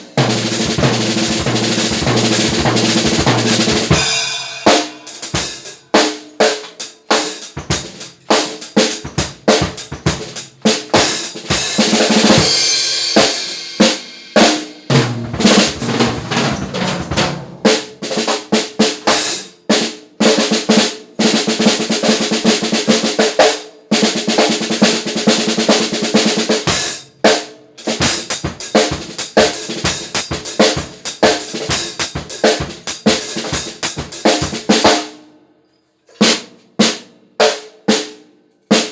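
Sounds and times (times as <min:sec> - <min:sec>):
snare drum strokes and fills: 0:00.0 - 0:19.5, 0:21.4 - 0:35.1
bass drum: 0:00.2 - 0:04.3, 0:14.9 - 0:17.8.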